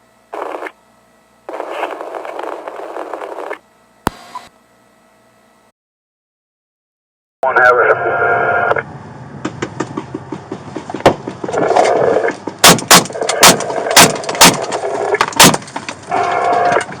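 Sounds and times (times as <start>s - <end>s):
muffled radio chatter: 7.4s - 8.8s
loud sharp gunshots: 12.6s - 14.6s.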